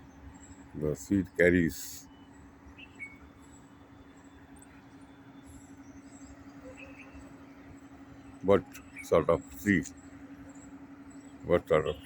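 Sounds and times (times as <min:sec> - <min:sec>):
steady hum: 0:00.0 - 0:12.0.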